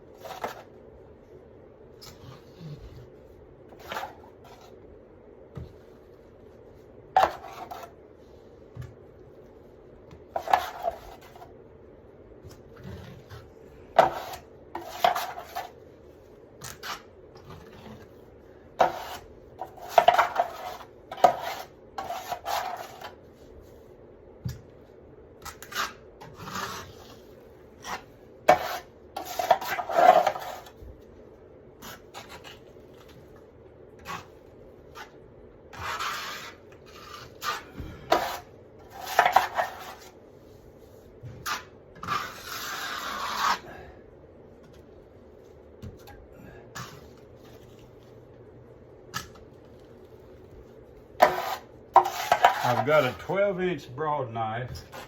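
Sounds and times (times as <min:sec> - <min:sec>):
drywall knife scraping pan: 0:10.4 - 0:11.4, 0:12.8 - 0:15.8, 0:18.8 - 0:23.2, 0:25.5 - 0:27.2, 0:27.8 - 0:30.8, 0:34.9 - 0:40.1, 0:41.4 - 0:43.8, 0:51.2 - 0:53.3.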